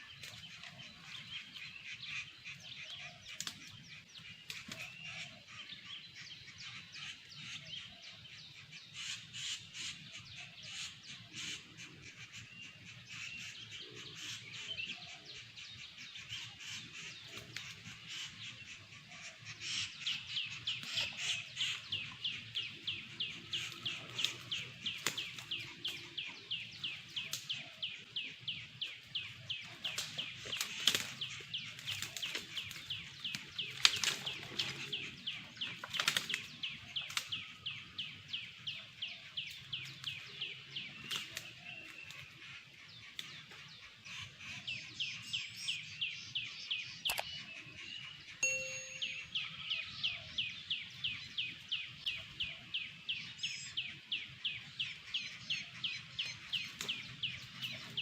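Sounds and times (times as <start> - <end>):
bird calling: 0.0 - 40.6, 41.4 - 52.4
sharp clicks: 47.1 - 47.3.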